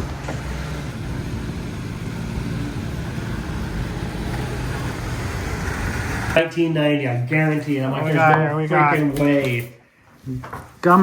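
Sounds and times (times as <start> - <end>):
car engine running while driving: 0.0 - 6.4
people talking: 6.4 - 11.0.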